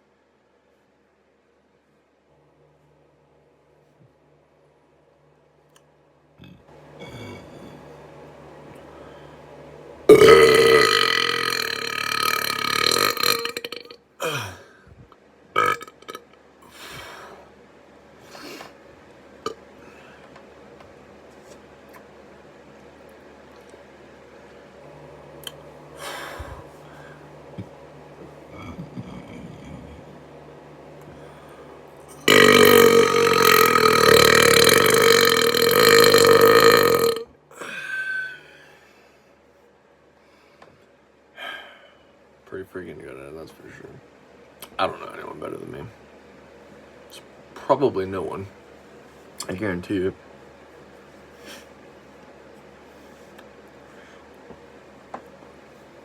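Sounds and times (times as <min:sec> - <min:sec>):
man burping: 0:06.4 - 0:07.8, 0:10.1 - 0:14.7, 0:15.6 - 0:16.2, 0:28.5 - 0:30.1, 0:32.2 - 0:38.4.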